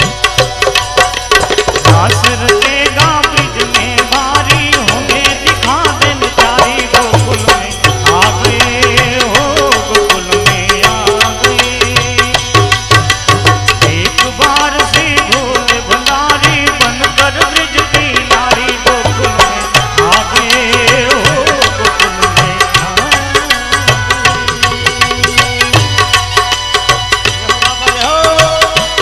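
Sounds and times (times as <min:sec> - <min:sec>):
hand drum beat: 0:00.0 - 0:29.0
wavering melody line: 0:17.1 - 0:29.0.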